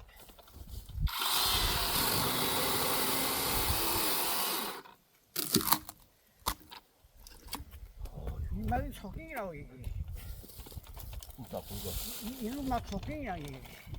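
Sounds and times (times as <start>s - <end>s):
power saw cutting log: 1.1s - 5.0s.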